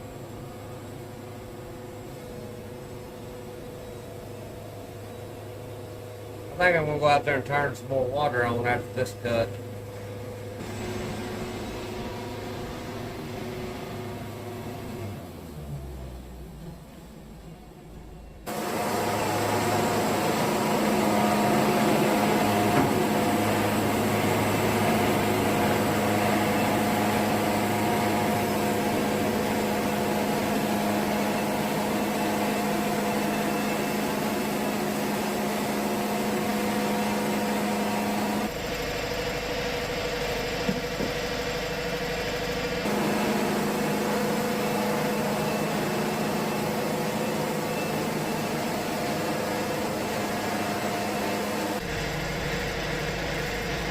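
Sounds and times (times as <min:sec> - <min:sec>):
band sawmill sawing log: 0:06.4 - 0:15.6, 0:18.5 - 0:53.9.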